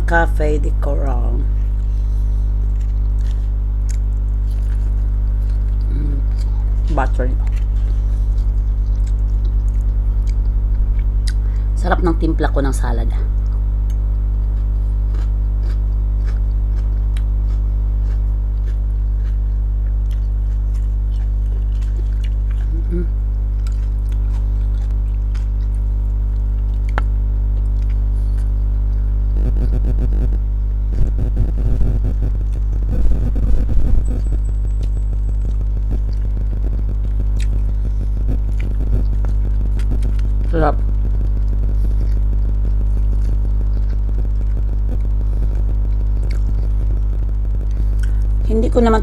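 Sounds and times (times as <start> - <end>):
low electrical hum: 0.0 - 49.0
person chewing and biting: 1.6 - 11.6, 13.4 - 29.1, 37.0 - 40.4, 41.3 - 47.1.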